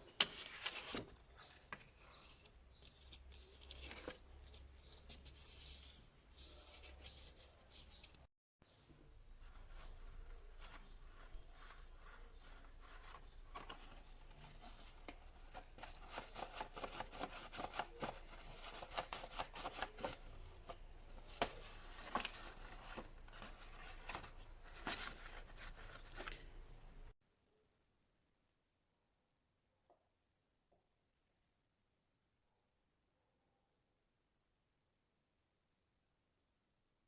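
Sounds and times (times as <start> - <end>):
paper rustling and rubbing: 0.0 - 8.2, 9.4 - 26.4.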